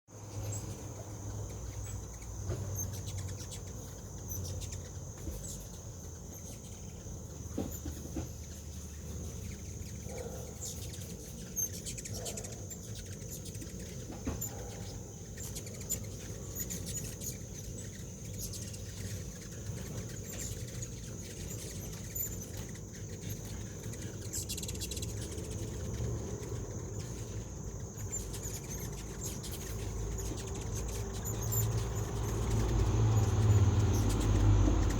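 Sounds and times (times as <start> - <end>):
insects singing: 0.1 - 34.9.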